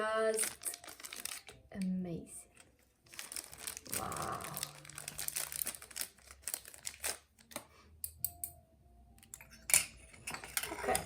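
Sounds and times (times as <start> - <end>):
plastic packaging crinkling: 0.0 - 7.6.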